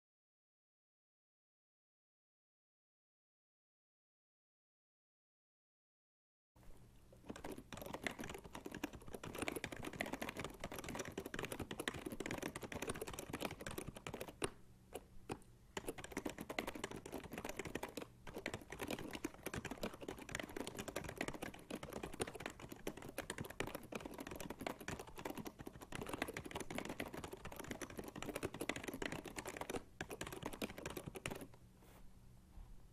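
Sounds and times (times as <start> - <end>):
keyboard typing: 7.2 - 31.6.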